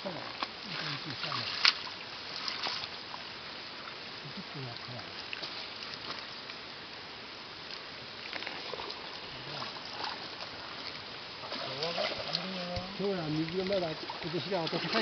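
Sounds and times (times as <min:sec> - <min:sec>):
outdoor hiss: 0:00.0 - 0:15.0
water sloshing and dripping: 0:00.0 - 0:15.0.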